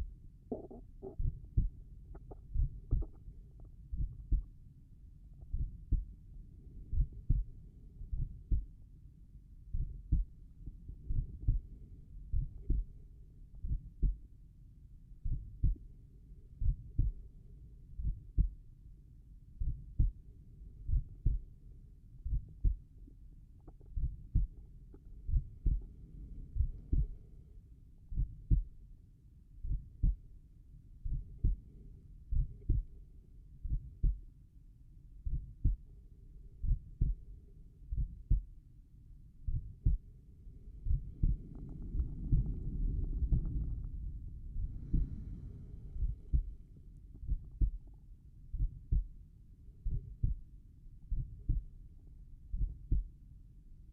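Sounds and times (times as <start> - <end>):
slow heartbeat thumps: 0.0 - 4.6, 5.3 - 8.8, 9.6 - 14.4, 15.2 - 15.9, 16.6 - 17.3, 17.9 - 18.7, 19.6 - 20.2, 20.8 - 21.6, 22.2 - 27.5, 28.1 - 28.8, 29.6 - 30.3, 31.0 - 31.7, 32.3 - 33.0, 33.6 - 34.3, 35.2 - 35.9, 36.6 - 37.3, 37.9 - 38.6, 39.4 - 49.2, 49.8 - 50.5, 51.1 - 51.8, 52.5 - 53.2.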